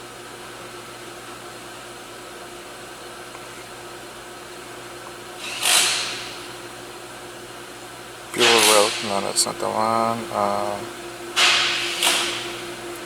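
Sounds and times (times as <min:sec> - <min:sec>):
car engine idling: 0:08.3 - 0:13.0.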